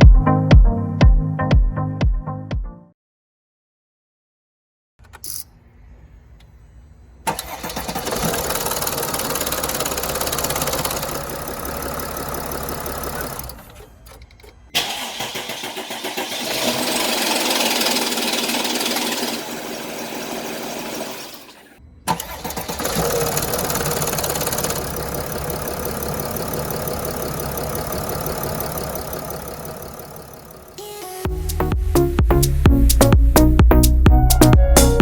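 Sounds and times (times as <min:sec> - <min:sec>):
engine starting and running: 0:07.2 - 0:35.0
engine clicking rattle: 0:07.3 - 0:34.0.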